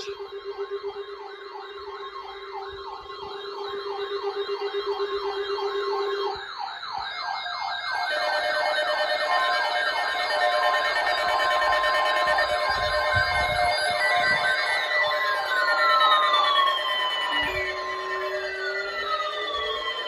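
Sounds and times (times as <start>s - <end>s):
electronic alert tone wailing: 0.0s - 0.3s, 8.0s - 20.0s
steady lower tone: 12.3s - 20.0s.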